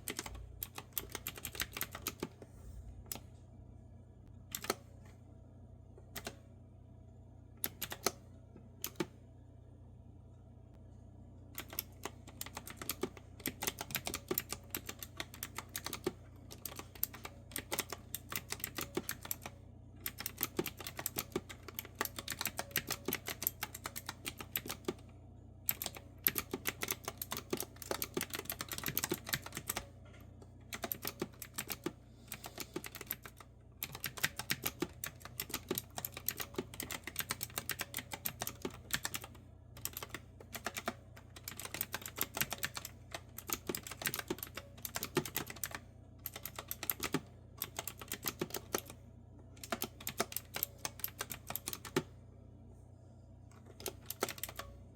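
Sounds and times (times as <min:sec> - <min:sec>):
clicky keyboard typing: 0:00.0 - 0:02.4, 0:04.5 - 0:04.8, 0:07.6 - 0:08.2, 0:08.8 - 0:09.2, 0:11.6 - 0:25.0, 0:25.7 - 0:29.9, 0:30.6 - 0:49.0, 0:49.6 - 0:52.1, 0:53.6 - 0:54.8
faint low hum: 0:00.0 - 0:54.9.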